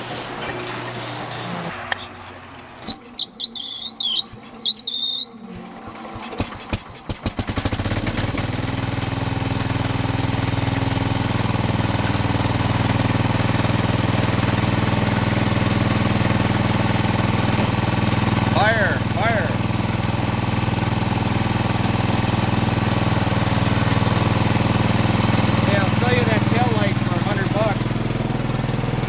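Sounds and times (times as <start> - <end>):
high squeals: 2.8 - 5.6
tractor engine cranking and running: 2.8 - 29.0.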